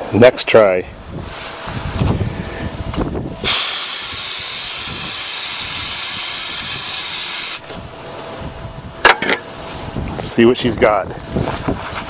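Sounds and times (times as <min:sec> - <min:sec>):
aerosol can spraying hiss: 0:03.4 - 0:07.6.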